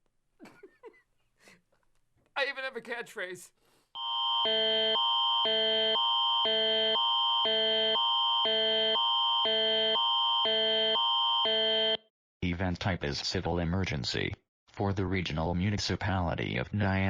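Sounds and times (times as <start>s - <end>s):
emergency alert tone: 4.0s - 12.1s.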